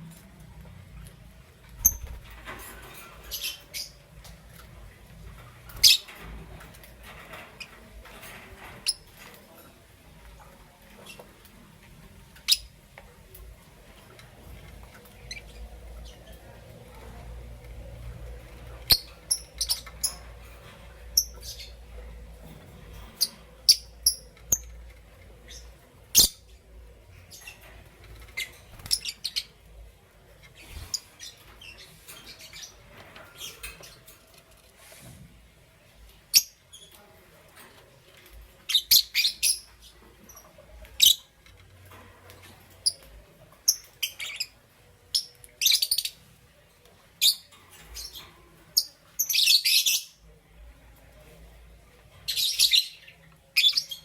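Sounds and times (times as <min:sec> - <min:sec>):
lovebirds chirping: 0:01.6 - 0:09.5, 0:10.6 - 0:34.2, 0:38.4 - 0:41.4, 0:42.3 - 0:46.3.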